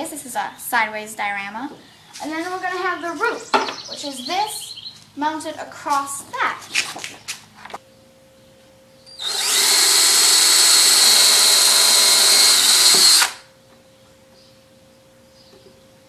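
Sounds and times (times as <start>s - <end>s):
cordless drill boring into wood: 9.2s - 13.4s.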